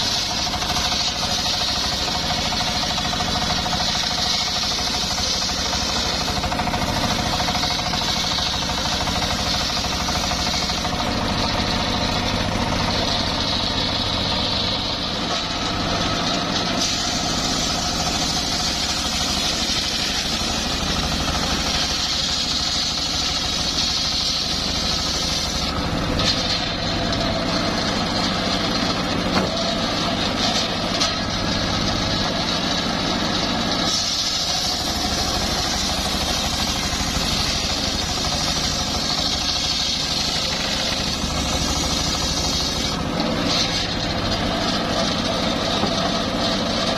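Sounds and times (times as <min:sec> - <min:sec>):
saw blade hissing through log: 0:00.0 - 0:46.9
sawmill engine droning: 0:00.0 - 0:46.9.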